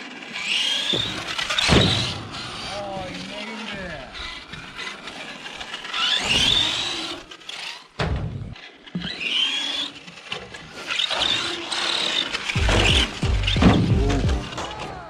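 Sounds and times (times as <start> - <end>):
electric motor whining: 8.9 - 14.8
sharp hit: 12.6 - 14.5.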